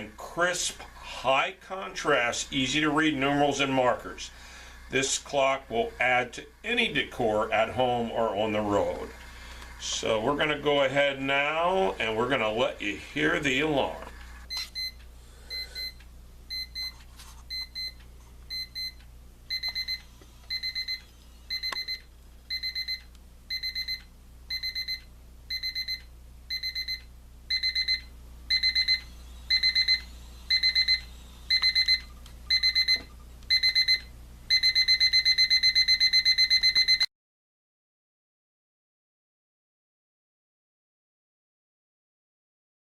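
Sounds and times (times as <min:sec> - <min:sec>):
alarm clock beeping: 0:10.3 - 0:37.1.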